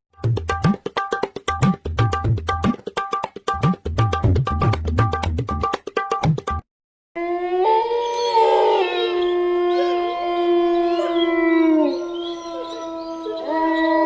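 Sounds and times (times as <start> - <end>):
dogs howling together: 7.2 - 14.0.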